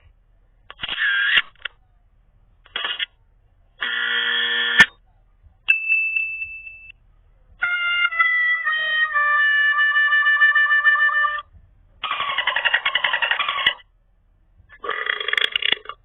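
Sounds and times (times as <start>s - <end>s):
steady high beep: 5.7s - 7.0s
held multi-pitch sound: 5.7s - 13.8s.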